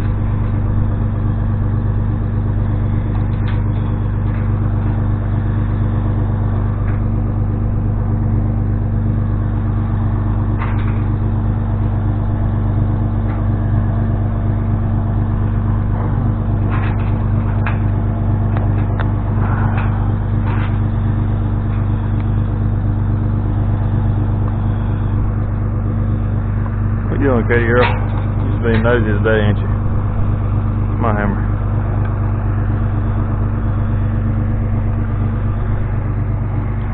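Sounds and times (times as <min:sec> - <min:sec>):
engine humming steadily: 0:00.0 - 0:36.9
short clanks and clicks: 0:15.9 - 0:20.9, 0:27.7 - 0:29.0.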